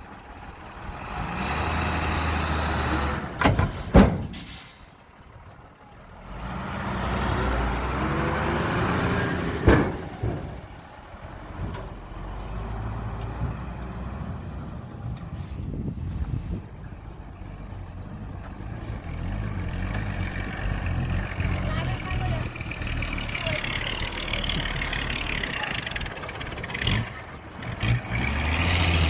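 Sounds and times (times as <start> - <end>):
diesel earthmoving machinery: 0.0 - 29.0.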